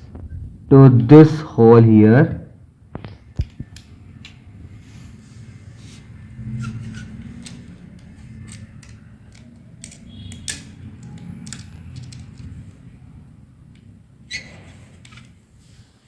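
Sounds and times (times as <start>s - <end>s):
metal screws clicking on plastic: 7.4s - 12.6s.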